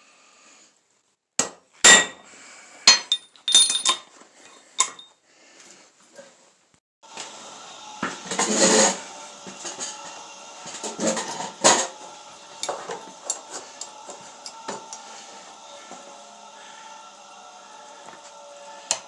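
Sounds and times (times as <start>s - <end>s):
steel tools clinking and clattering: 2.9s - 5.1s, 12.6s - 14.9s
steady background hum: 7.1s - 19.0s.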